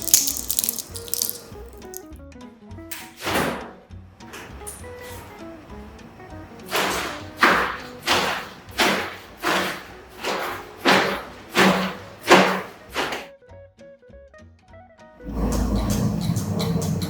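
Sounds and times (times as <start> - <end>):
sharp noisy hits on prop: 6.7 - 13.3.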